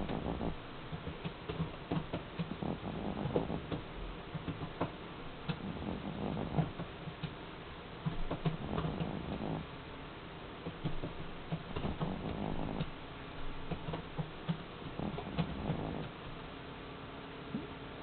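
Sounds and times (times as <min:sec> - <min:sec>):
cat snoring: 0:00.0 - 0:00.7, 0:02.4 - 0:03.8, 0:05.5 - 0:06.9, 0:08.3 - 0:09.7, 0:11.8 - 0:13.0, 0:14.8 - 0:16.2.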